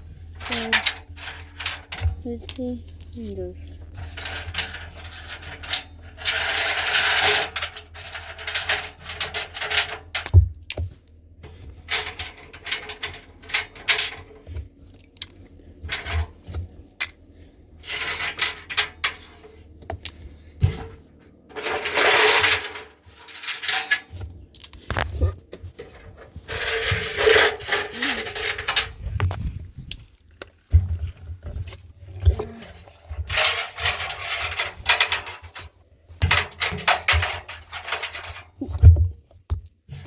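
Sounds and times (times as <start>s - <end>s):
small hard objects clinking: 21.4s - 25.2s, 26.4s - 30.7s.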